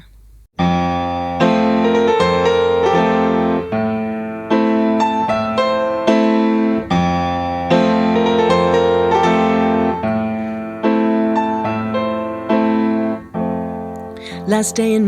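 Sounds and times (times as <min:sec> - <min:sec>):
piano chords ringing: 0:00.6 - 0:15.0.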